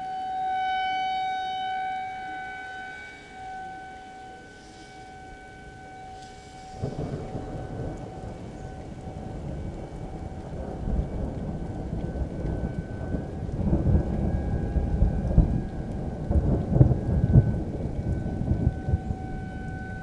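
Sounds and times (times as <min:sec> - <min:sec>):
faint warning siren tone: 0:00.0 - 0:20.0
rumbling thunder: 0:02.8 - 0:20.0.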